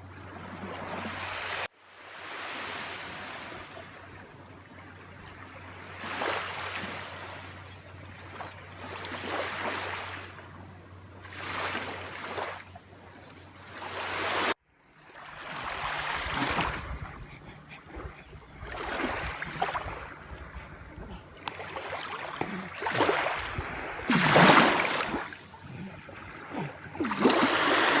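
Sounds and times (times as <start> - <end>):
sea waves washing onto beach: 15.2 - 28.0.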